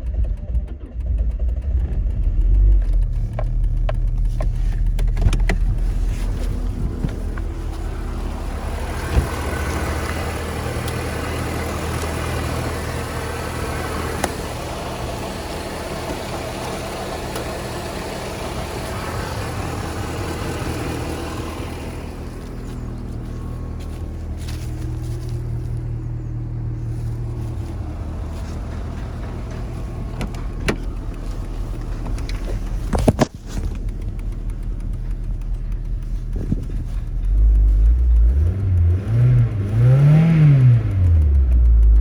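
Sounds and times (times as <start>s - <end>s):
car engine running: 0.0s - 42.0s.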